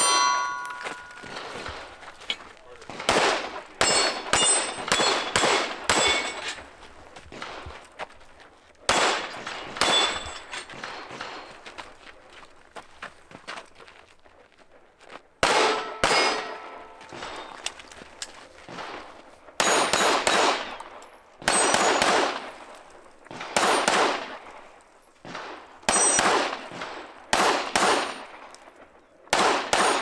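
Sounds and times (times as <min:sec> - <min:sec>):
pistol shots: 0:00.0 - 0:06.7, 0:08.9 - 0:11.6, 0:15.4 - 0:17.6, 0:18.7 - 0:30.0
bullets clanging on steel targets: 0:00.0 - 0:07.8, 0:08.9 - 0:11.6, 0:15.4 - 0:18.9, 0:19.6 - 0:24.5, 0:25.9 - 0:28.7, 0:29.7 - 0:30.0.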